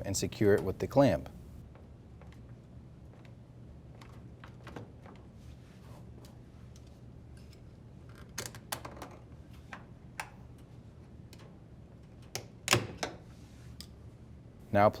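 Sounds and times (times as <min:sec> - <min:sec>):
steady low hum: 0:00.0 - 0:08.1.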